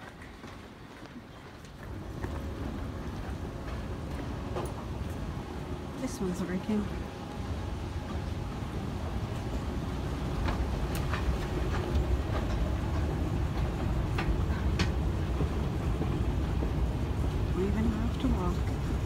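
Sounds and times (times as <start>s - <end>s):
moving walkway rumble: 0.0s - 19.0s.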